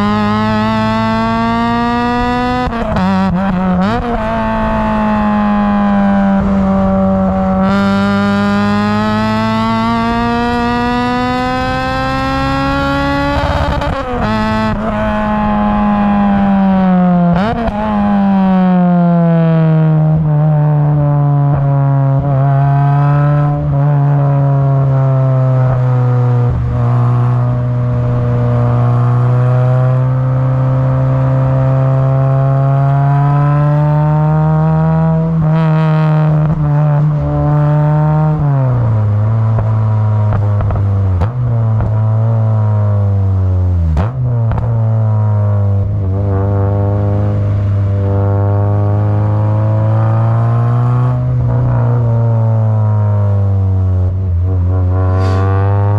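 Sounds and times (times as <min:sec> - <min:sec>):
car engine accelerating: 0:00.0 - 0:55.9.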